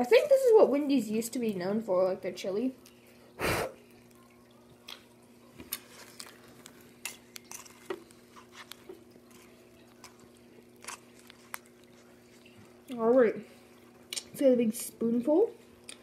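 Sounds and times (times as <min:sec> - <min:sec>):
spoon stirring and scraping container: 0:05.8 - 0:10.2.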